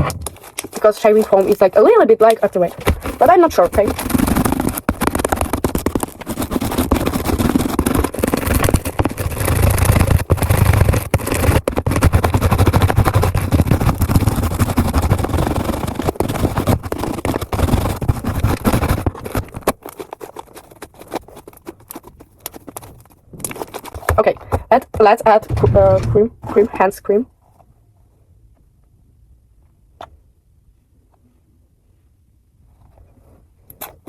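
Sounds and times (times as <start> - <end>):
low rumble of handling: 25.3 - 26.9.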